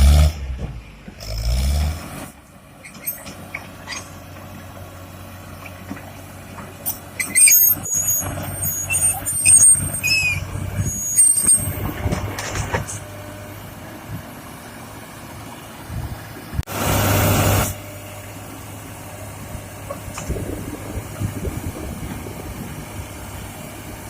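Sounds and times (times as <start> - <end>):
diesel machinery humming: 0.0 - 24.0
high-pitched squeals and hisses: 7.2 - 11.9.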